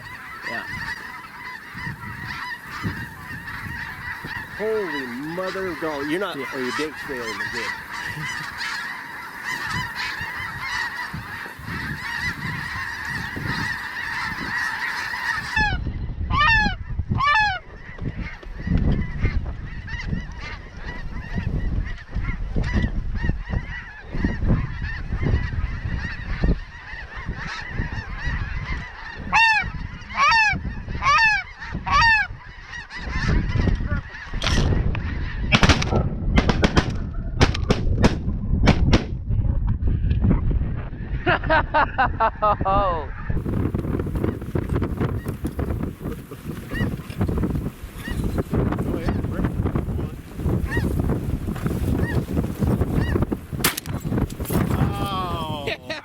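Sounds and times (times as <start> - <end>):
single high goose honks: 0.0 - 17.6, 29.3 - 34.3, 48.0 - 51.0
geese flock calling: 0.0 - 37.8, 41.0 - 56.0
wind buffeting microphone: 0.0 - 56.0
sharp cracks: 35.5 - 39.2, 53.6 - 54.8.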